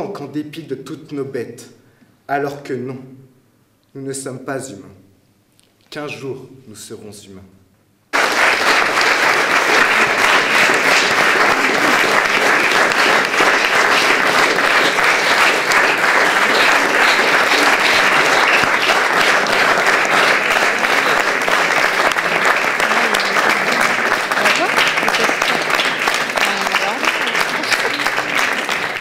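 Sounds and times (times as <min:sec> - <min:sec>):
audience applauding: 0:08.1 - 0:29.0.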